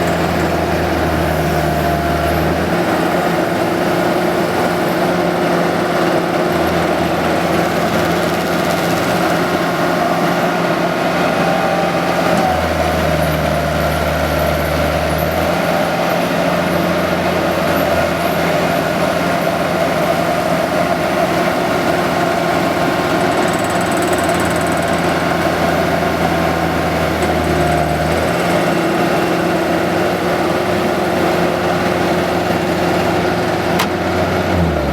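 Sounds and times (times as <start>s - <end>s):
diesel engine running: 0.0s - 34.9s.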